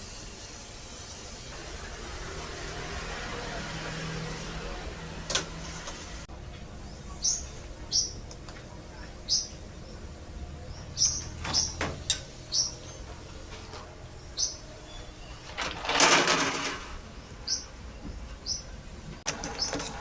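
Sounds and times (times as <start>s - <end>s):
bird chirping: 6.8s - 8.3s, 9.0s - 13.2s, 14.1s - 15.6s, 17.1s - 18.8s.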